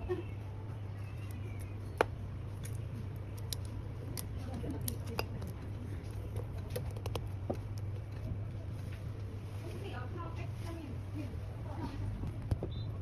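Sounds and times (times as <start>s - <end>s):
steady low hum: 0.0s - 13.0s
hand tools clicking and tapping: 1.2s - 7.9s.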